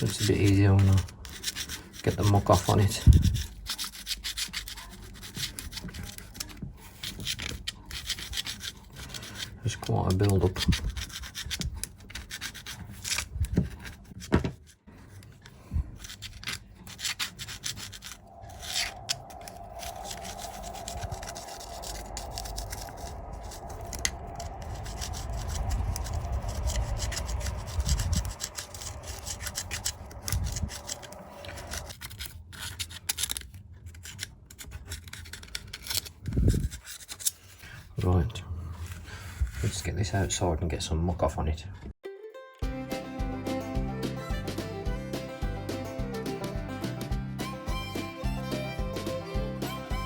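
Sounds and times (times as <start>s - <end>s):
scraping grease from wheel hub: 0.0s - 38.0s
steady hum: 17.9s - 31.9s.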